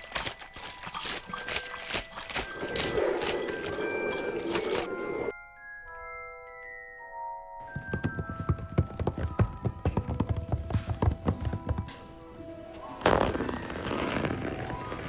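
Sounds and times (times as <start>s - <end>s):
rapid irregular knocks: 7.6s - 15.0s.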